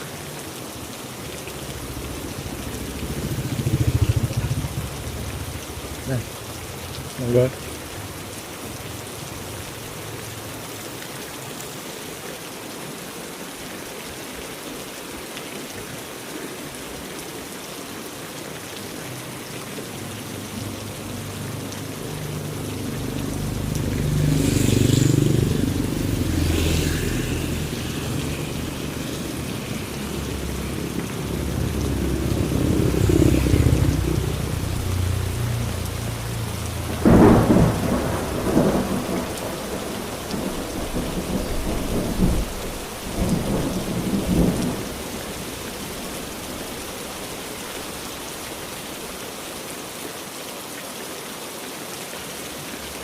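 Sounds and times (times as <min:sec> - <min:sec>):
heavy rain falling: 0:00.0 - 0:53.0
low rumble: 0:01.6 - 0:06.1.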